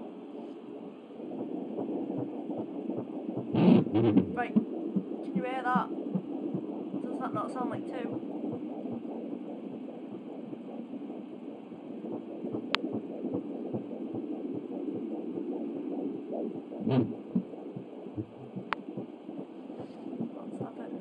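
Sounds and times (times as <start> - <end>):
fetal heartbeat on doppler: 0.0 - 21.0
static: 0.0 - 21.0
rubbing noise: 1.4 - 5.0, 12.5 - 20.8.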